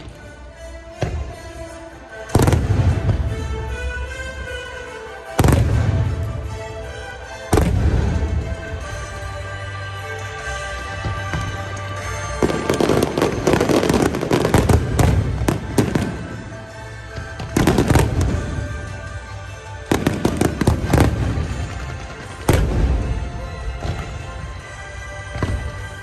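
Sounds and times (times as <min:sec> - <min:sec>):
music playing: 0:00.0 - 0:26.0
fireworks bursting and crackling: 0:02.3 - 0:04.2, 0:05.3 - 0:06.7, 0:10.4 - 0:26.0.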